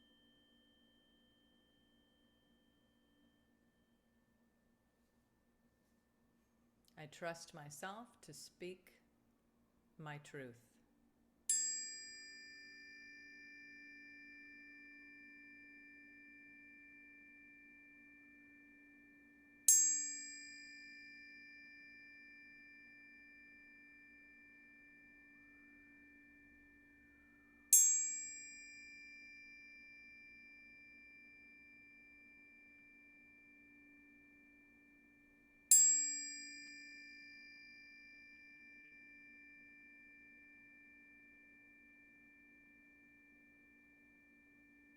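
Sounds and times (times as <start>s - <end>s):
high metal chime ringing: 11.5s - 44.9s.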